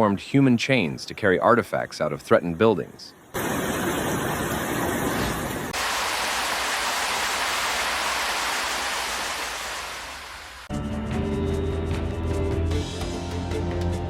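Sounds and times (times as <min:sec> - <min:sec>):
water rushing: 0:03.4 - 0:10.7.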